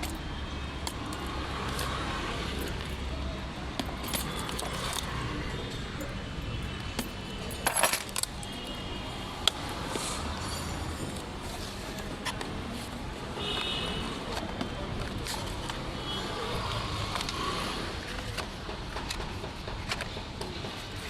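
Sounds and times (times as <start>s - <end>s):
box and packaging clicks and rattles: 0.0s - 8.8s.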